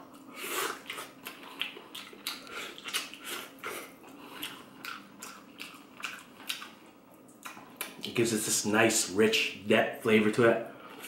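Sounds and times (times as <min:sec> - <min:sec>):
person chewing food: 0:00.0 - 0:08.1.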